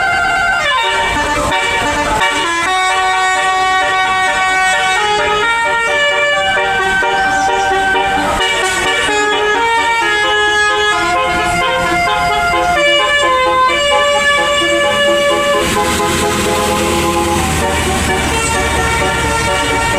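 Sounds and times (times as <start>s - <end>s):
musical air horn melody: 0.0s - 19.9s.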